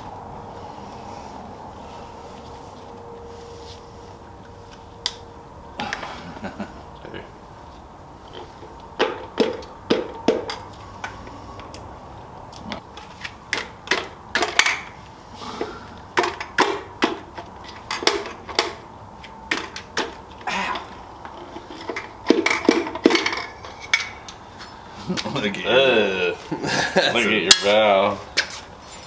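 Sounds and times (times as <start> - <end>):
metal parts and tools clinking: 17.4 - 18.9, 19.5 - 24.4, 28.4 - 29.0.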